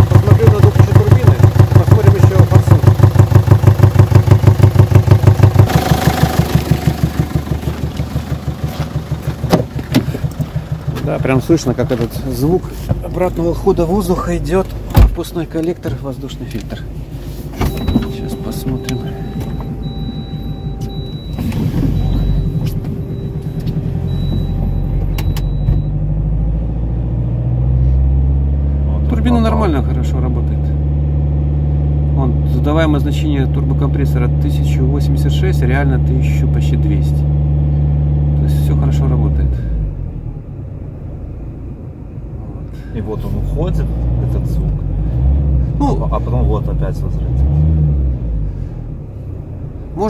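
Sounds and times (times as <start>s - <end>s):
diesel engine running with knock: 0.0s - 13.6s, 17.5s - 26.4s
diesel engine pulsing: 0.0s - 50.0s.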